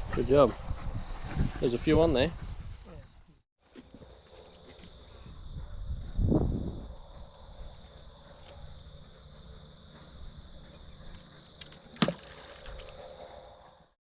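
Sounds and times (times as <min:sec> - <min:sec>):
low wind rumble: 0:00.0 - 0:03.3, 0:05.0 - 0:11.4.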